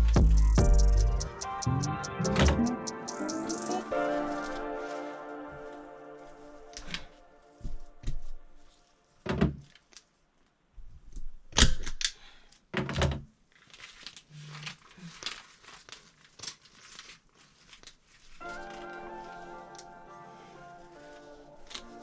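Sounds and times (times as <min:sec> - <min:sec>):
material rustling and crinkling: 0:04.0 - 0:11.5, 0:13.3 - 0:22.0.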